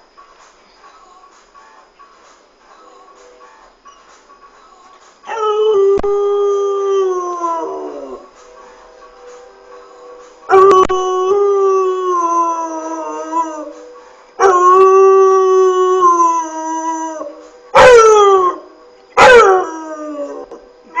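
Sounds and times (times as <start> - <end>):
dog howling: 5.3 - 8.3, 10.5 - 13.8, 14.4 - 21.0.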